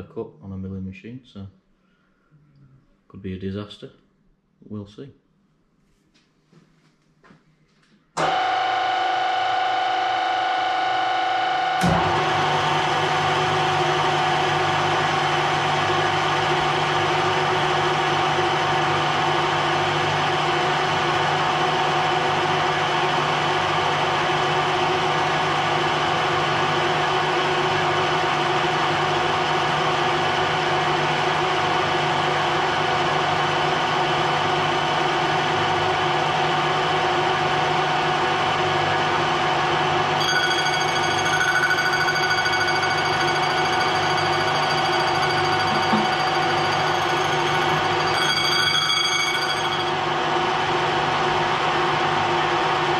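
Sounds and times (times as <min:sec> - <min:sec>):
milling machine humming and whining: 0:08.2 - 0:52.9
high steady tones: 0:40.2 - 0:50.6.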